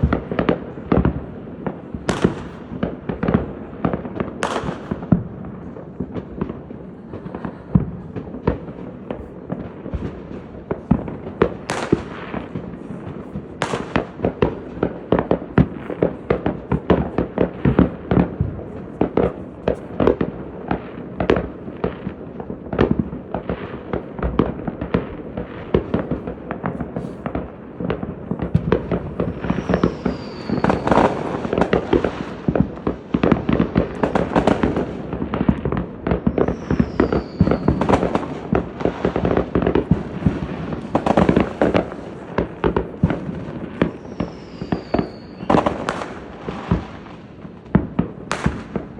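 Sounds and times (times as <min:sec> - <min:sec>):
fireworks crackling and banging: 0:00.0 - 0:48.9
fireworks rising whistles: 0:28.6 - 0:33.2, 0:36.2 - 0:47.3.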